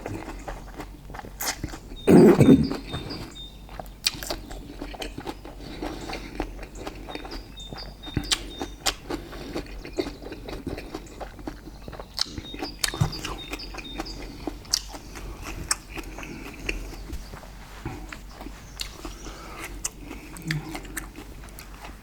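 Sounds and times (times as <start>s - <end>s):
lip smacks: 0.0s - 16.9s
wet chewing: 0.0s - 22.0s.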